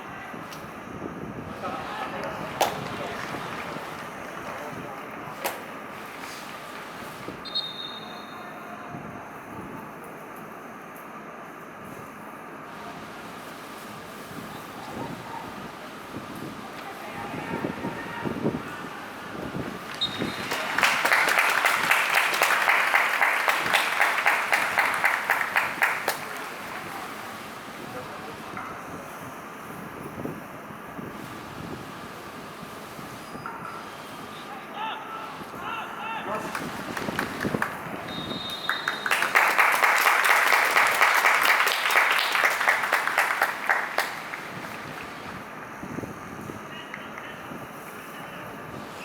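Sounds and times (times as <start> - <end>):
crowd clapping in rhythm: 1.6 - 7.4, 19.2 - 28.0, 36.3 - 45.6.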